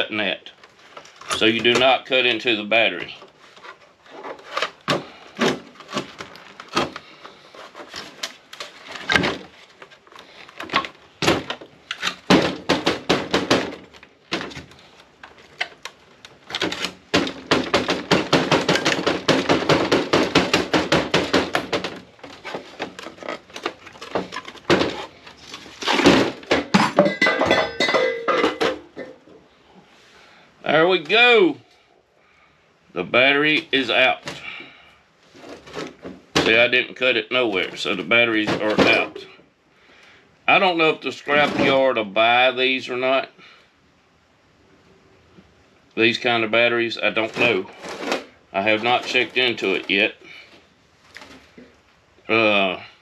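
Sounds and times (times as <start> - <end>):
plastic case knocks and clatter: 10.6 - 14.7, 15.6 - 29.2.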